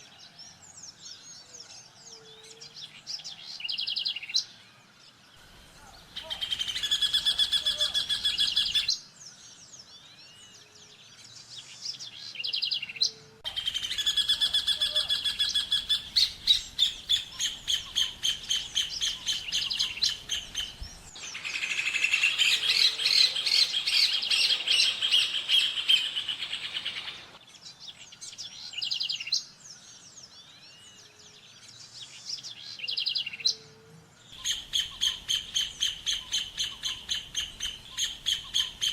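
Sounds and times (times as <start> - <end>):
birds singing fast ringing notes: 6.1 - 9.0, 12.4 - 27.4, 32.8 - 38.9.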